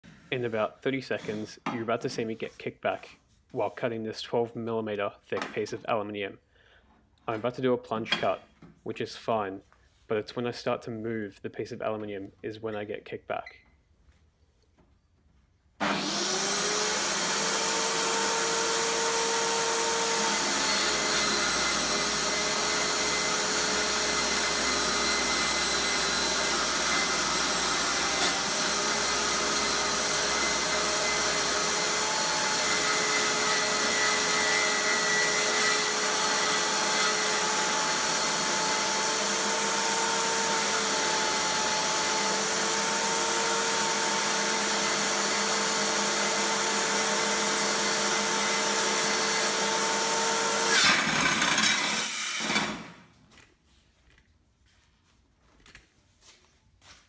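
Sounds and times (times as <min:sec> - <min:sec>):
table saw whining: 0:15.8 - 0:53.1.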